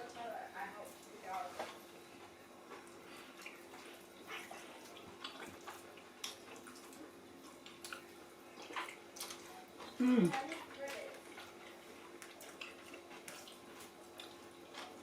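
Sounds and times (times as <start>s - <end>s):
people chewing food: 0.0s - 15.0s.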